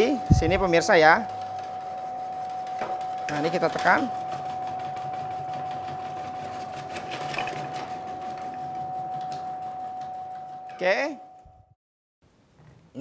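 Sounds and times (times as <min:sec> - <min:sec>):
electric motor whining: 0:00.0 - 0:10.0.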